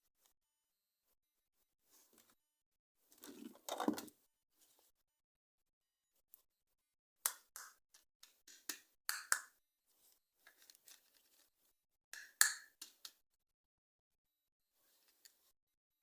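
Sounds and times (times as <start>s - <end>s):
packaging rustling: 10.5s - 11.5s.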